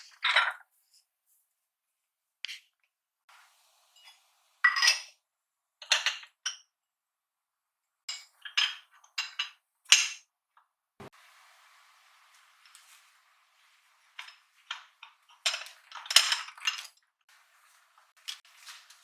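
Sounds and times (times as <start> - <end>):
faint hiss: 3.3 - 5.1, 11.0 - 15.4
dishes clinking and clattering: 4.0 - 5.2, 12.4 - 19.0.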